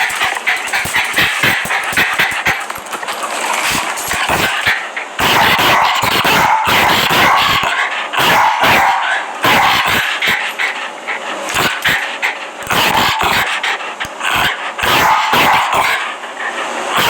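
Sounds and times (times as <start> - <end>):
dog barking: 4.3 - 10.1, 12.7 - 13.6, 14.3 - 16.1.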